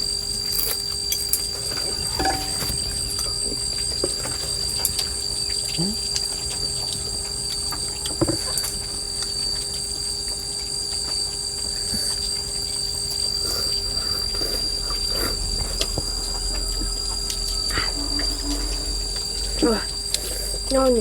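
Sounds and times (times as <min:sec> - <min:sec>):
insects chirring: 0:00.0 - 0:21.0
chopsticks tapping bowls: 0:02.1 - 0:02.8.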